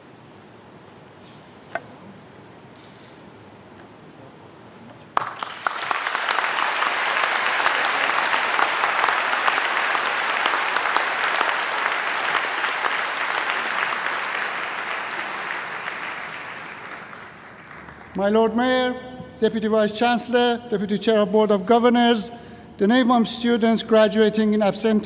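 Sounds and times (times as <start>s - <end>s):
audience applauding: 5.2s - 18.6s.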